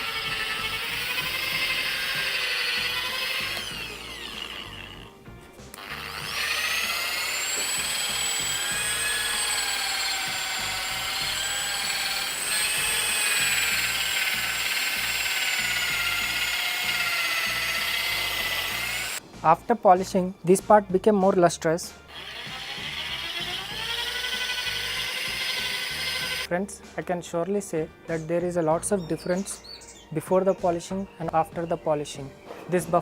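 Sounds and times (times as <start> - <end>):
electric drill whining: 0.0 - 19.2, 22.1 - 26.5.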